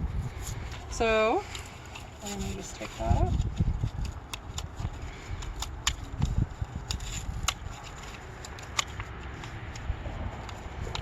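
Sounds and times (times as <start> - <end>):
low rumble: 0.0 - 1.1.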